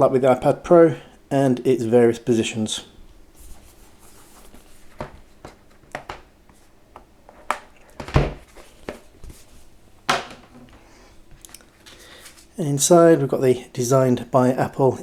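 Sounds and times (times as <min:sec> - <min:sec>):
box handling taps and rustles: 0:04.5 - 0:09.4.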